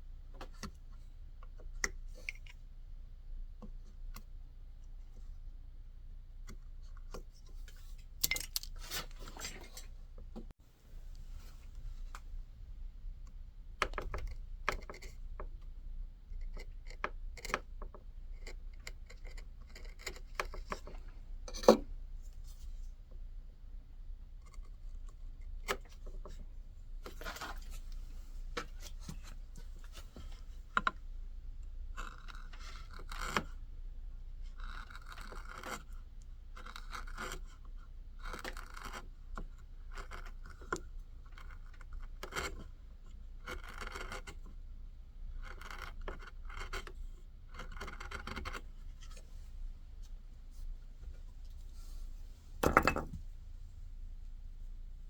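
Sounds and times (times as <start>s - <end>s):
carving tool scraping wood: 16.4s - 20.9s, 32.0s - 33.6s, 34.5s - 36.0s, 36.6s - 37.6s, 38.2s - 40.7s, 41.3s - 42.7s, 43.4s - 44.6s, 45.4s - 49.2s.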